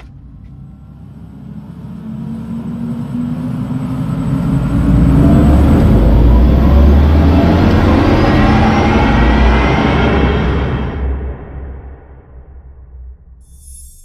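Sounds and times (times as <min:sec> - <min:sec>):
deep electronic drive hum: 0:12.8 - 0:14.0.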